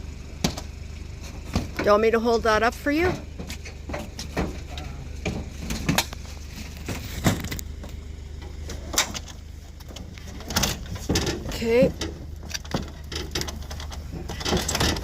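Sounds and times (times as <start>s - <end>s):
low hum: 0.0s - 15.0s
scrap items knocking and clattering: 3.0s - 7.6s, 10.3s - 15.0s.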